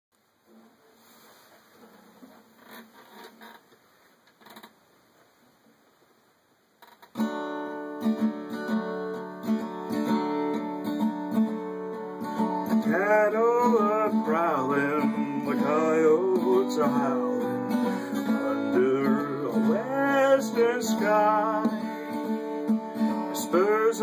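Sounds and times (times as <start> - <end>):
acoustic guitar strumming: 7.1 - 24.0
person singing sliding notes: 12.8 - 22.5.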